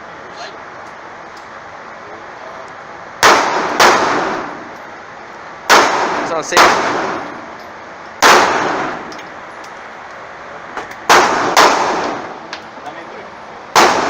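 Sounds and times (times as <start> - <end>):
pistol gunshots echoing: 3.2 - 4.7, 5.7 - 7.5, 8.2 - 9.1, 11.1 - 12.4, 13.7 - 14.0.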